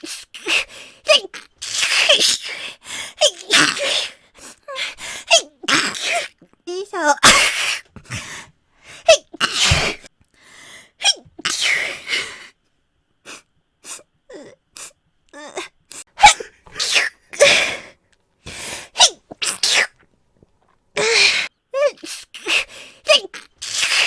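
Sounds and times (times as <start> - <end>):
woman sneezing: 7.1 - 7.9, 9.1 - 10.1, 16.2 - 17.8, 19.0 - 19.9, 21.0 - 24.0.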